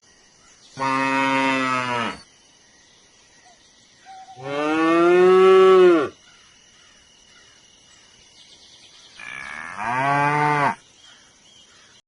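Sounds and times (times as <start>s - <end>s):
cow mooing: 4.4s - 6.1s, 9.2s - 10.8s.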